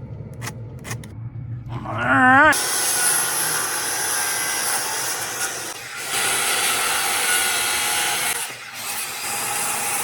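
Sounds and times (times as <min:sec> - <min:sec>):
saw cutting wood: 0:02.6 - 0:10.0.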